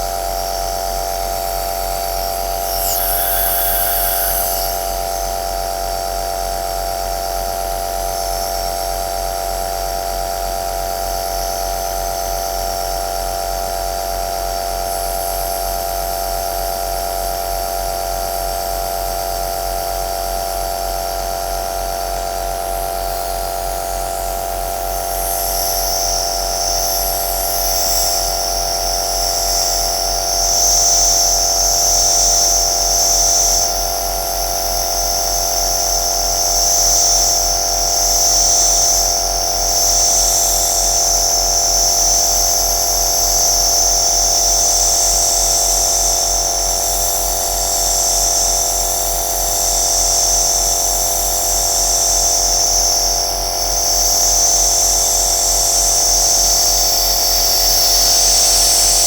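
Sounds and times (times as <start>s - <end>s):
nebulizer motor humming: 1.4s - 5.5s
airy hiss: 1.8s - 5.5s.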